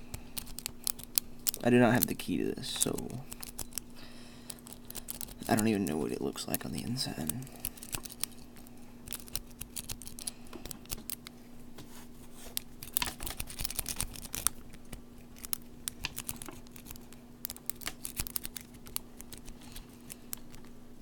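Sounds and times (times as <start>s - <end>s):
lock pick clicking and scraping: 0.3s - 1.6s, 2.8s - 3.9s, 7.6s - 11.2s, 12.5s - 20.6s.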